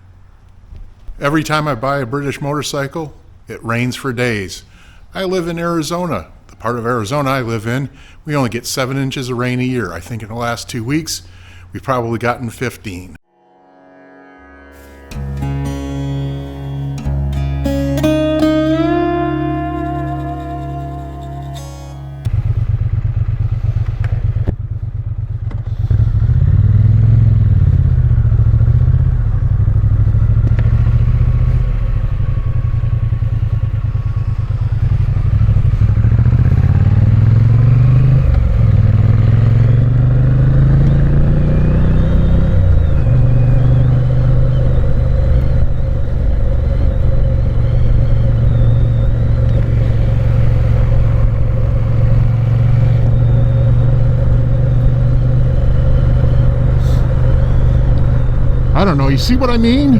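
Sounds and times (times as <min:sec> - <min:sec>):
motorcycle engine accelerating: 0:15.1 - 0:59.9.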